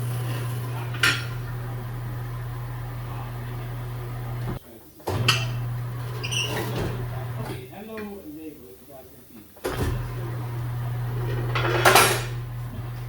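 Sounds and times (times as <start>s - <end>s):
tire changer machine humming: 0.0s - 7.8s, 9.6s - 13.0s.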